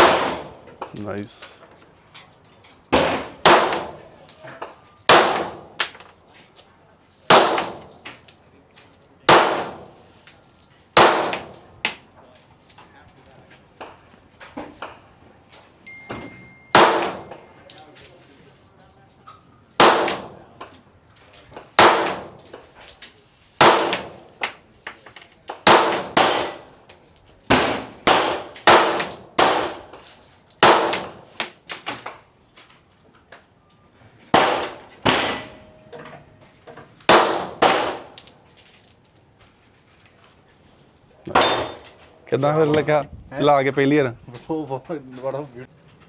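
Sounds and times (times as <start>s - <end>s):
pistol shots with ringing echo: 0.0s - 0.6s, 3.0s - 4.0s, 5.1s - 5.8s, 7.3s - 8.0s, 9.3s - 10.0s, 11.0s - 11.7s, 16.4s - 17.6s, 19.8s - 20.5s, 21.8s - 22.4s, 23.6s - 24.2s, 25.6s - 26.7s, 27.5s - 29.9s, 30.6s - 31.3s, 37.1s - 38.2s, 41.3s - 41.8s.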